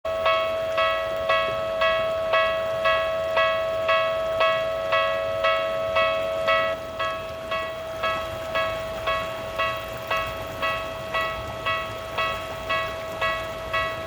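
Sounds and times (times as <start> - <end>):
level crossing warning bell: 0.1 - 14.0.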